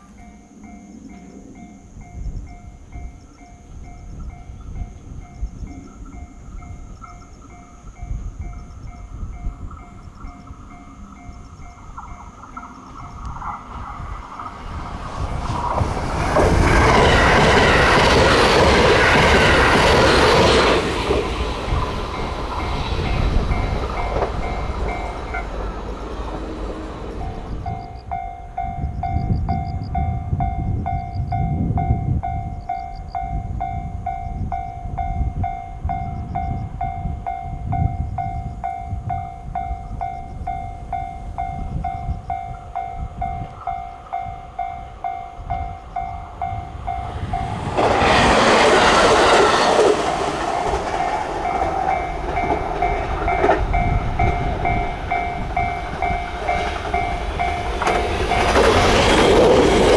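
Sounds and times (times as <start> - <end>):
train rumbling on rails: 0.0 - 59.9
level-crossing bell ringing: 16.8 - 59.9
loud rushing noise: 46.7 - 52.1.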